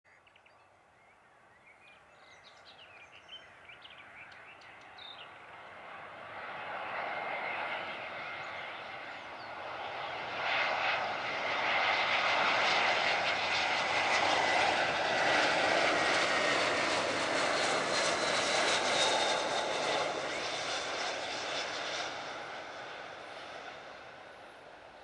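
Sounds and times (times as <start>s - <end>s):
jet engines roaring: 5.3s - 25.0s.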